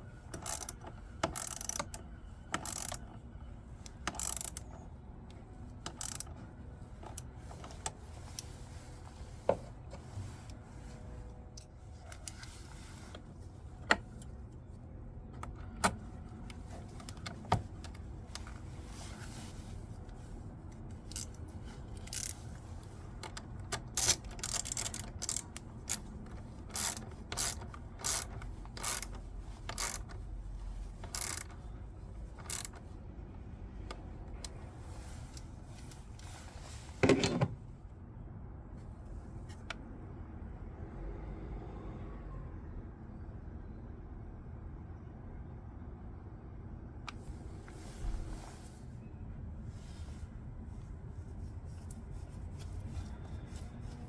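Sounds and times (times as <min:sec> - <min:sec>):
socket ratchet clicking: 0:00.3 - 0:03.1, 0:03.8 - 0:04.8, 0:05.8 - 0:06.4, 0:21.0 - 0:22.5, 0:23.2 - 0:30.2, 0:31.0 - 0:31.7, 0:32.4 - 0:32.8.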